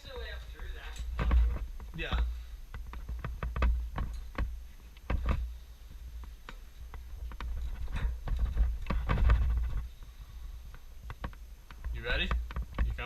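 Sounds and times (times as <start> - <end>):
footsteps on wooden boards: 1.1 - 9.9.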